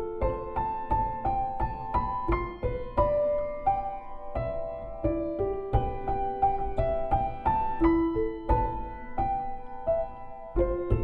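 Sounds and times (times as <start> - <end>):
gentle piano melody: 0.0 - 11.0.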